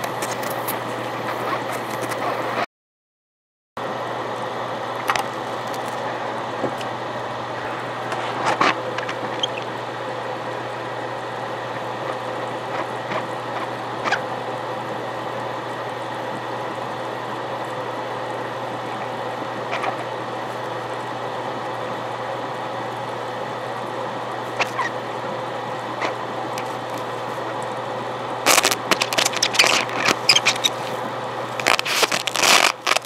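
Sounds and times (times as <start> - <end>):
sharp crackles: 28.4 - 31.0, 31.6 - 33.0
torch flame hissing: 28.4 - 33.0.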